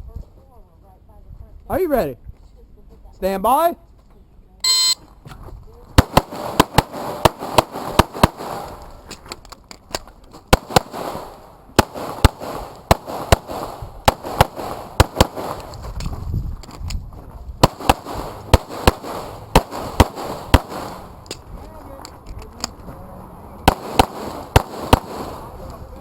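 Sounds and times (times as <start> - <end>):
handgun shots: 10.6 - 15.9, 17.6 - 21.4, 23.7 - 25.5.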